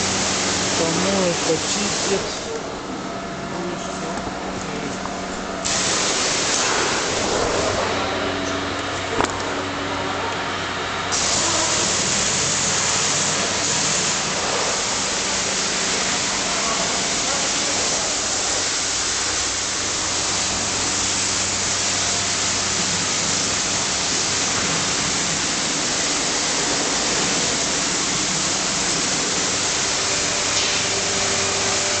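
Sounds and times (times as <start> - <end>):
pressure washer spraying water: 0.0 - 3.0, 5.6 - 8.3, 11.1 - 32.0.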